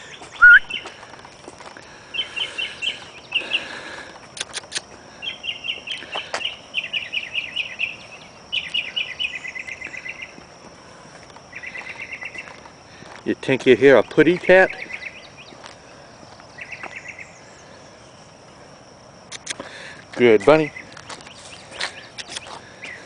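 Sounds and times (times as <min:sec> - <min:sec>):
songbird trilling: 0:00.0 - 0:00.8, 0:04.5 - 0:10.4, 0:11.5 - 0:12.6, 0:14.0 - 0:15.6, 0:16.5 - 0:17.7
sharp clicks: 0:04.4 - 0:04.9.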